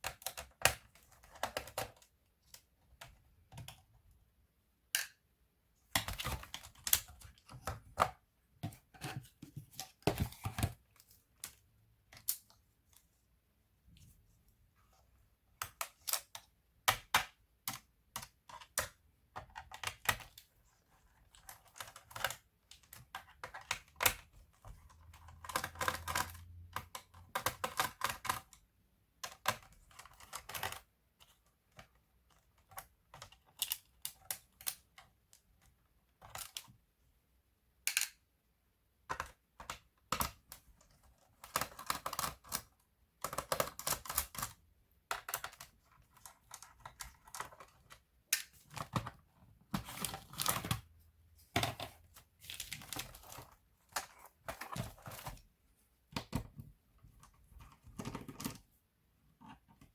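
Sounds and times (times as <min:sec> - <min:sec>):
plastic clicks and rattles: 0:21.2 - 0:28.6, 0:39.1 - 0:50.9.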